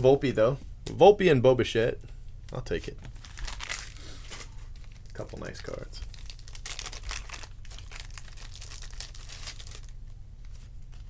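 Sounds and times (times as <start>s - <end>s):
foil wrappers crinkling: 3.0s - 11.0s.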